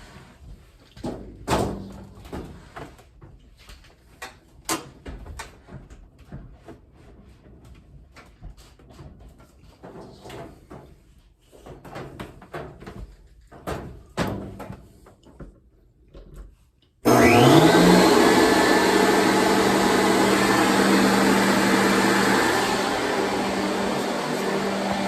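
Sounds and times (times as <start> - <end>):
leaf blower rushing air: 17.1 - 25.0.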